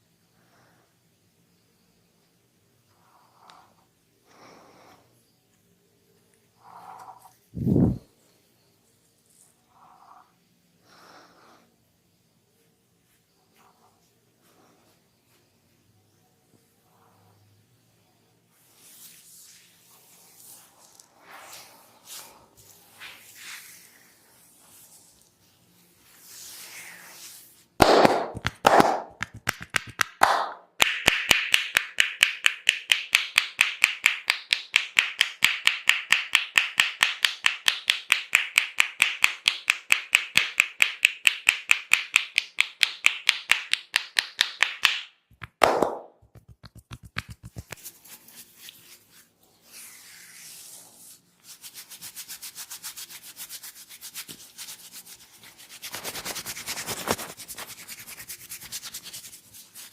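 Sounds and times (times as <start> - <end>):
hands rubbing over hair: 18.6 - 25.3, 26.0 - 30.0, 31.8 - 59.9.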